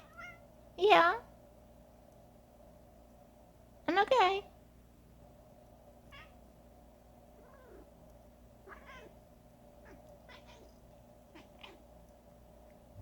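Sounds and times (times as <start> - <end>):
cat meowing faintly: 6.1 - 6.4, 7.4 - 7.9, 8.6 - 9.2, 9.8 - 11.8.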